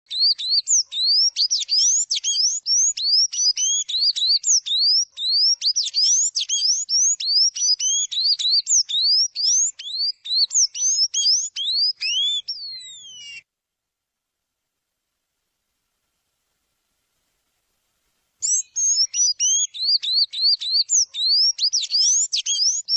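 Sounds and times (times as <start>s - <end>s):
songbird whistling: 0.1s - 13.4s, 18.4s - 22.9s.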